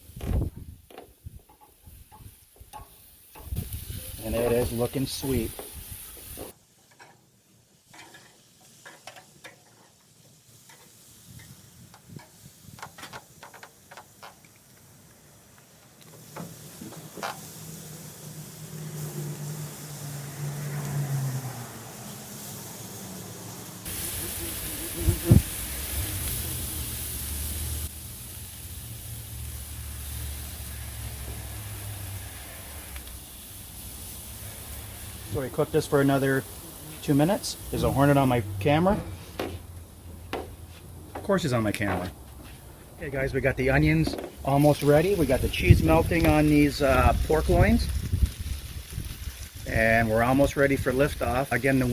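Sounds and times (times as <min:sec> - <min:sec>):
wind rumbling on microphone: 0:00.0 - 0:02.4, 0:03.4 - 0:04.6, 0:25.1 - 0:25.6, 0:45.0 - 0:51.2
meat sizzling on a grill: 0:00.0 - 0:06.6, 0:07.8 - 0:14.3, 0:14.9 - 0:40.6, 0:43.1 - 0:51.9.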